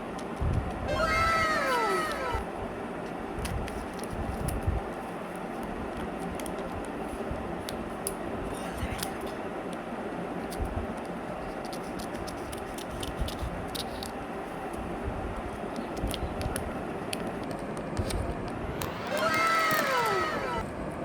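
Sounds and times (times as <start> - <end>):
chocolate wrappers crinkling: 15.8 - 20.6.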